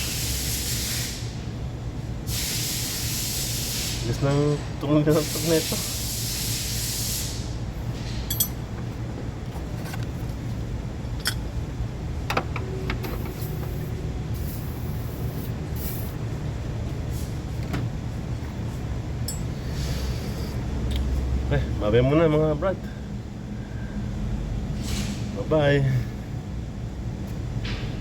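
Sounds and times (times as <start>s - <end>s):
clicks and knocks of engine work: 8.0s - 11.6s, 12.2s - 14.0s
car engine humming: 8.3s - 21.2s.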